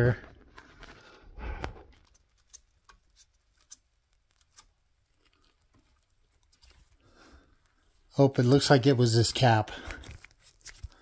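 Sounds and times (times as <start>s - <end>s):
soft rustle: 0.0s - 8.2s.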